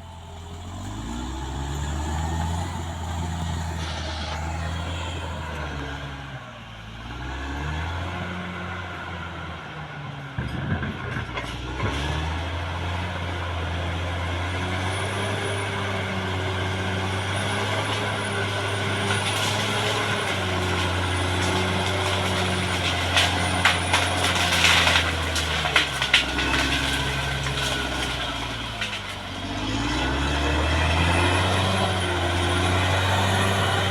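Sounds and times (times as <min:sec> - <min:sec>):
bulldozer diesel engine under load: 0:00.0 - 0:33.9.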